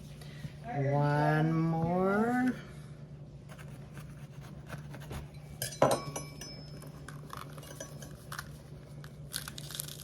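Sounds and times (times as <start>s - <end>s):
low steady hum: 0.0s - 10.0s
knife clinking against dish: 5.6s - 6.9s, 7.6s - 8.4s.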